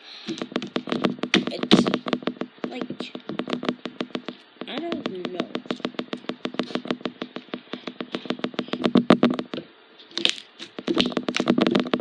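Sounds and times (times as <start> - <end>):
slime squished by hand: 10.1 - 12.0.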